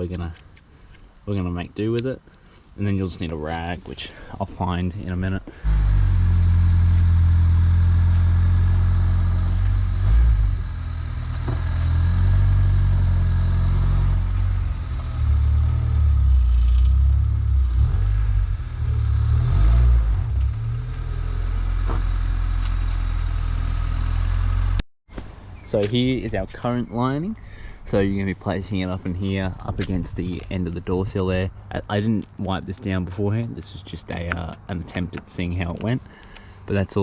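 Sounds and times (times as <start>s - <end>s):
car engine running: 5.6s - 24.8s.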